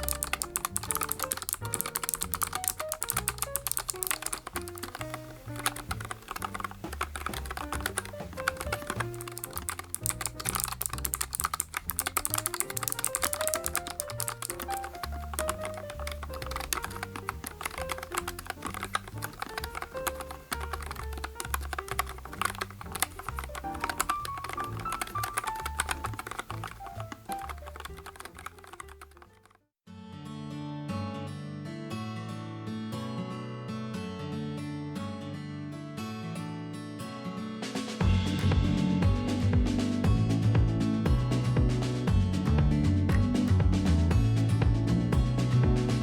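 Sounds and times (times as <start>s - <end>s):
mechanical keyboard typing: 0.0s - 29.6s
background music with bass: 38.0s - 46.0s.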